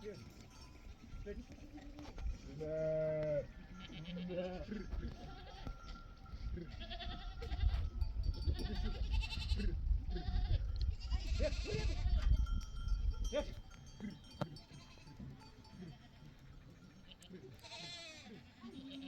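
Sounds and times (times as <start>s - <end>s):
goats and sheep bleating: 0.0s - 19.0s
wind rumble on microphone: 4.6s - 14.6s.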